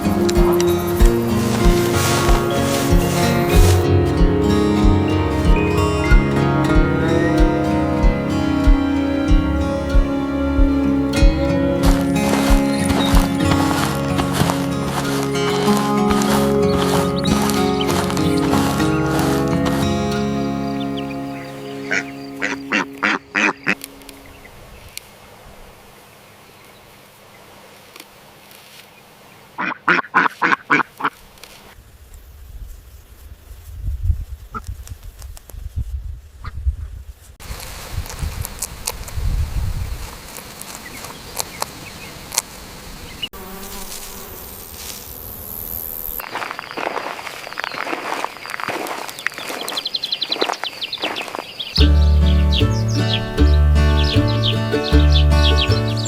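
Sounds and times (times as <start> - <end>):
insect buzzing: 0.0 - 24.4, 42.8 - 49.7
ducks quacking: 0.0 - 24.5, 29.6 - 31.2
rustling: 0.0 - 24.8, 43.4 - 51.8
faint hiss: 37.4 - 46.5.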